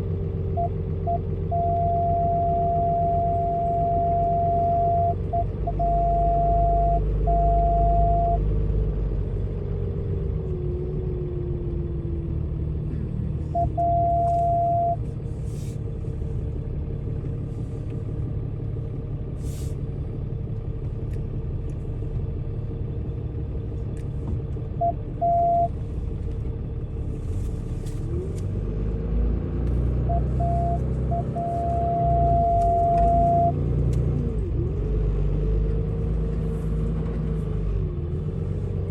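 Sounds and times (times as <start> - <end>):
truck engine running: 0.0 - 38.9
warning tone beeping: 0.6 - 8.5, 13.6 - 15.0, 24.8 - 25.7, 30.1 - 33.6.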